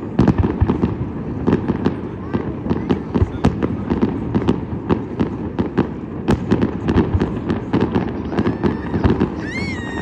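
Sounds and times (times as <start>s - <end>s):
firecrackers cracking and banging: 0.0s - 10.0s
faint rising firework whistle: 8.3s - 10.0s.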